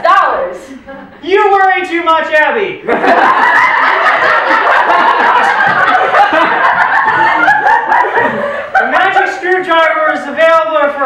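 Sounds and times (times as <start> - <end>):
people laughing: 2.8 - 10.4.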